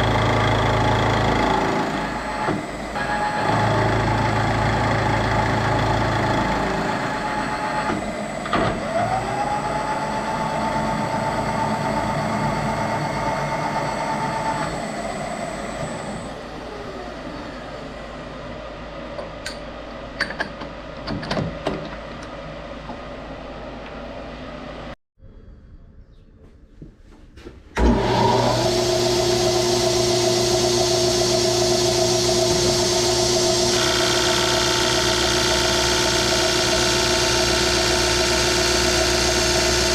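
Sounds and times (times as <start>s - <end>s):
machine tool motor whining: 0.0s - 18.0s, 27.8s - 39.9s
motor starting and running: 0.0s - 18.3s, 27.8s - 39.9s.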